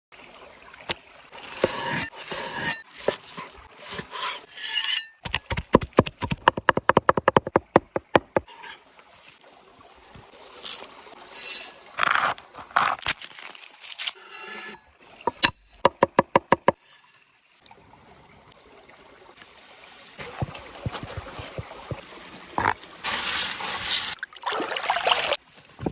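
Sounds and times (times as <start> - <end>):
rubbing and scraping: 1.4 - 6.6.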